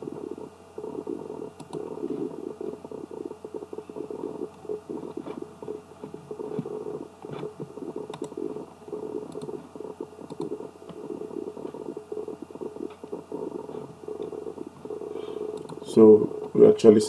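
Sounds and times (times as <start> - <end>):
computer mouse clicks: 1.5 - 2.4, 3.9 - 8.6, 9.2 - 11.0, 12.6 - 16.6.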